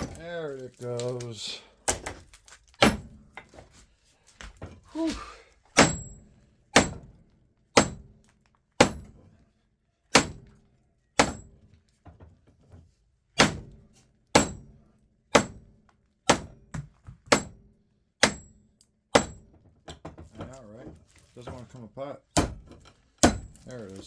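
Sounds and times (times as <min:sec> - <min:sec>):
hammer striking metal: 0:05.8 - 0:07.1, 0:07.8 - 0:08.1, 0:08.8 - 0:09.2, 0:10.1 - 0:10.5, 0:11.2 - 0:11.6, 0:13.4 - 0:14.7, 0:15.3 - 0:15.6, 0:16.3 - 0:16.6, 0:17.3 - 0:17.6, 0:18.2 - 0:19.5, 0:23.2 - 0:23.6.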